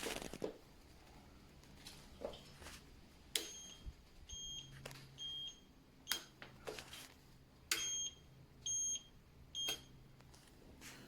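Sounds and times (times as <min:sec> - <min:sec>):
turn signal beeping: 0:07.7 - 0:10.0.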